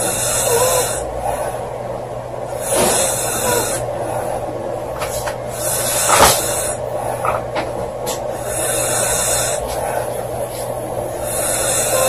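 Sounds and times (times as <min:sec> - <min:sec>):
woman snoring: 0:00.0 - 0:01.6, 0:02.5 - 0:04.4, 0:05.5 - 0:07.4, 0:08.3 - 0:12.0
steady low hum: 0:00.0 - 0:12.0.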